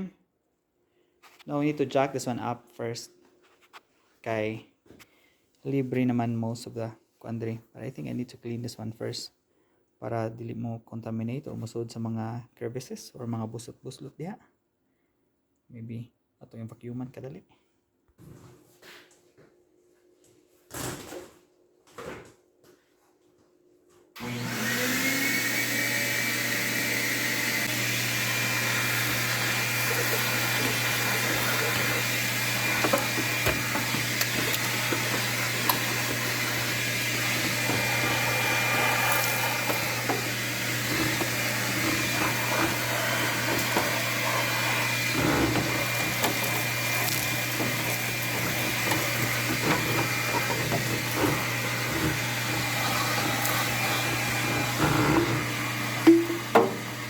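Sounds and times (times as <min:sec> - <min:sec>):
vacuum cleaner motor whine: 0:24.2 - 0:57.0.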